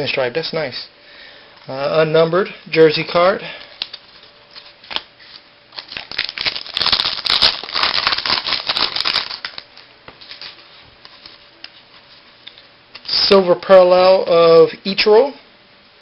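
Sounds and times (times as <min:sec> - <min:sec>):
trading cards rustling and clicking: 0:03.6 - 0:13.1.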